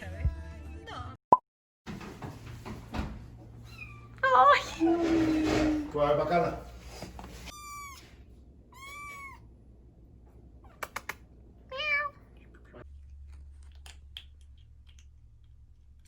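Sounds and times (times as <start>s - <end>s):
cat meowing: 7.5s - 9.5s, 11.7s - 12.2s.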